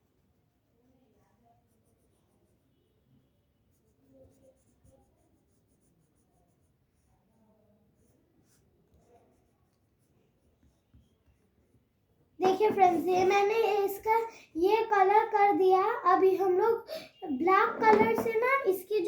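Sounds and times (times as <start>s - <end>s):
crayon scratching on paper: 1.6s - 2.6s, 3.6s - 7.1s, 7.9s - 10.9s, 12.4s - 19.0s.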